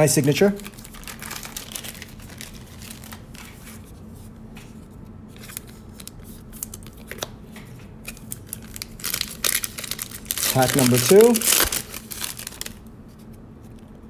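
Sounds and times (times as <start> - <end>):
foil wrapper crinkling: 0.0 - 3.8, 5.3 - 7.4, 8.0 - 12.9
cards clicking and rustling: 0.2 - 3.8, 5.4 - 12.8.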